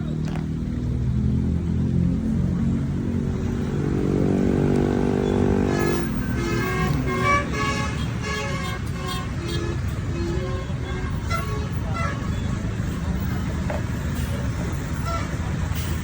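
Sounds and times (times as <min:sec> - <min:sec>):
bus engine running: 0:00.0 - 0:16.0
multi-tone bus horn: 0:04.8 - 0:13.0, 0:14.8 - 0:15.8.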